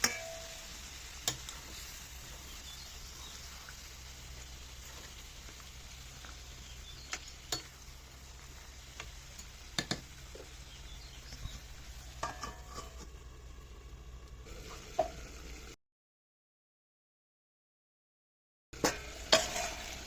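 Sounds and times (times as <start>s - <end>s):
utensil stirring food in pot: 0.0s - 13.2s, 18.8s - 20.0s.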